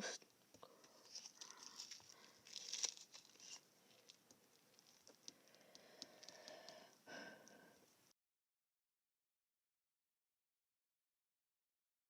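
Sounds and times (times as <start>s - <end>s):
soft rustling: 0.8s - 6.5s.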